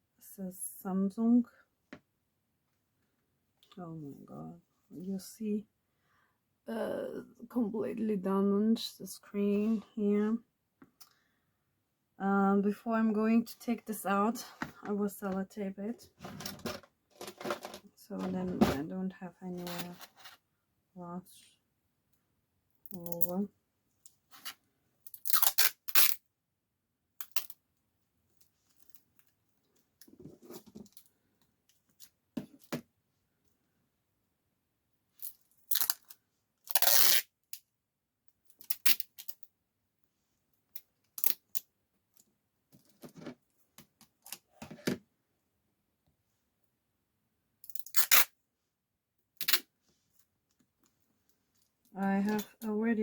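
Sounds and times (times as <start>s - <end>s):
tape ripping: 25.1s - 26.2s, 35.2s - 36.1s, 36.7s - 37.3s, 47.7s - 48.3s, 49.4s - 49.7s.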